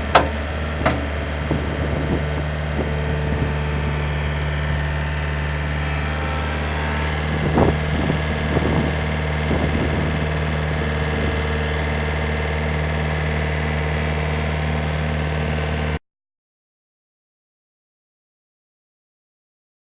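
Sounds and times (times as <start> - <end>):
short clanks: 0.0 - 1.2
diesel engine idling: 0.0 - 16.0.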